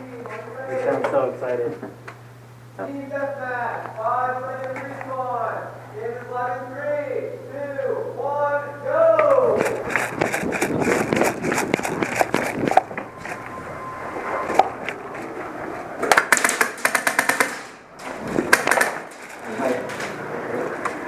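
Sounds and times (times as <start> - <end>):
airsoft guns firing: 16.0 - 17.8, 18.4 - 19.2
full-auto gun bursts: 16.1 - 17.8.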